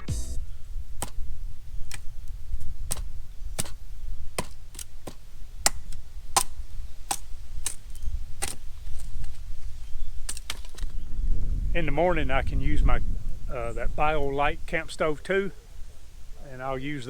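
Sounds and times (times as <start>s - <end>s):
blade chopping into wood: 1.0s - 1.2s, 2.8s - 8.7s.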